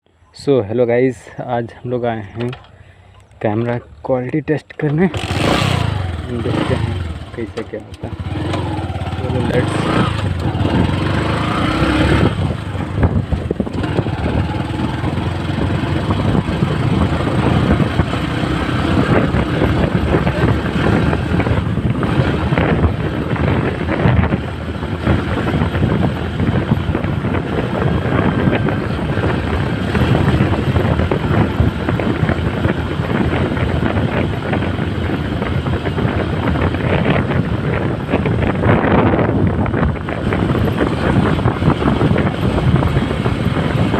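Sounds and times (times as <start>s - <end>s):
wind buffeting microphone: 0.5s - 43.9s
motorcycle engine running: 4.9s - 43.9s.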